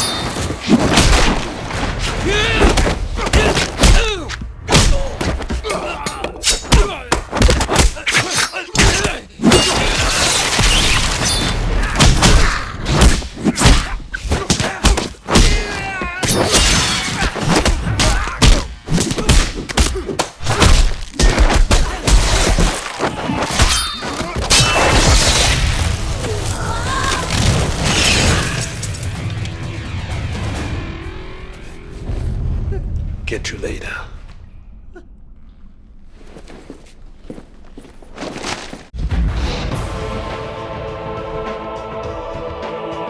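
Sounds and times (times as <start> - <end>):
punch and kick thuds: 0.7 - 5.7, 6.6 - 8.1, 12.0 - 25.4.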